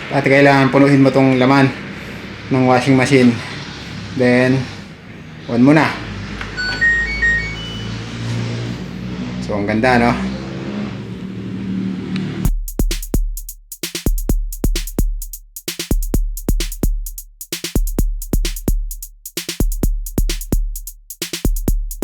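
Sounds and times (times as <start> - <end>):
electronic drum-machine music: 6.6 - 8.2.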